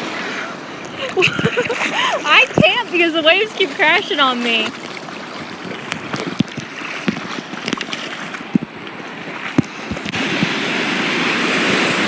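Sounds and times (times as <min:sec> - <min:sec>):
ocean surf washing: 0:00.0 - 0:12.0
wave breaking: 0:00.0 - 0:12.0
small splashes and knocks: 0:01.0 - 0:10.5.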